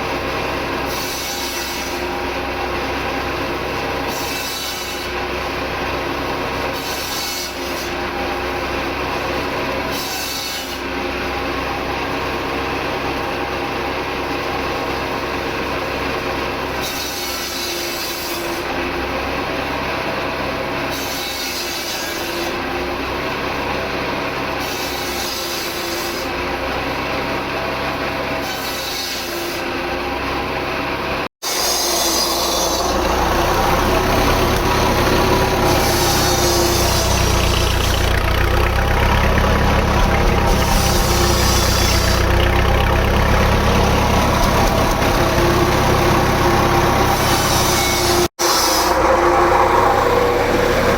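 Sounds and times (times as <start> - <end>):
rasping mechanical rubbing: 31.4 - 50.9
tractor engine running: 31.8 - 50.9.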